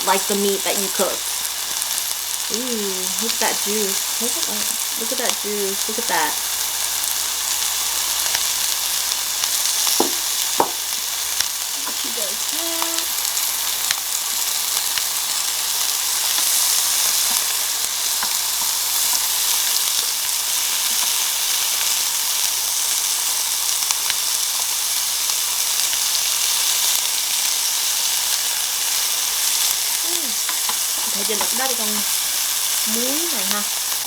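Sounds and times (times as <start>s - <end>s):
meat sizzling on a grill: 0.0s - 34.0s
fat popping: 9.6s - 13.2s.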